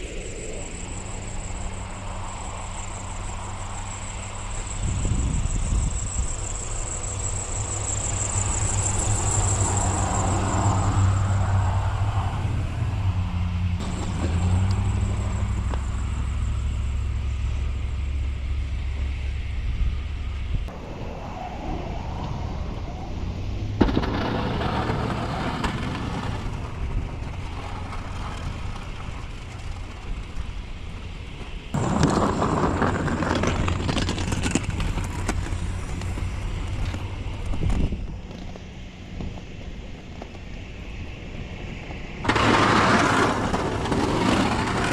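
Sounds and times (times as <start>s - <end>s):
truck engine running: 0.0s - 20.7s.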